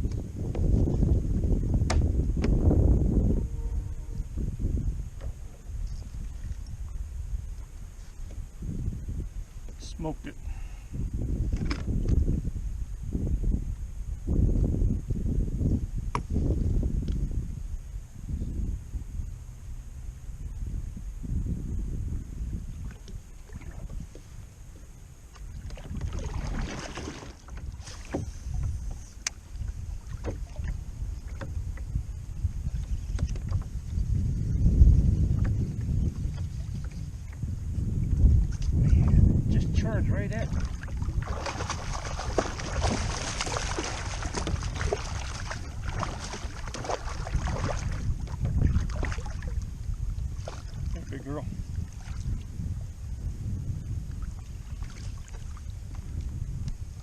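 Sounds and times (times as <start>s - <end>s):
wind rumbling on microphone: 0.0s - 57.0s
water splashing: 25.4s - 31.5s, 40.3s - 51.2s.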